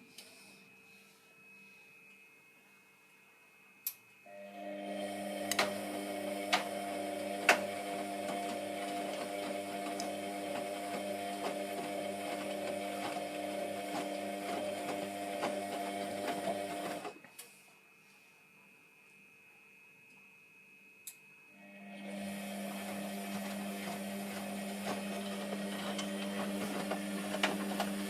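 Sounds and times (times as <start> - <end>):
washing machine motor hum: 4.3 - 17.2, 21.6 - 28.0
washing machine clicks and knocks: 6.4 - 11.6.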